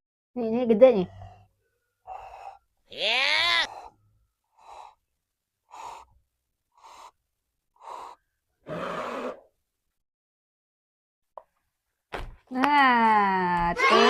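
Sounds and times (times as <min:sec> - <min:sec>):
person blowing puffs of breath: 0:02.1 - 0:02.7, 0:03.7 - 0:09.4.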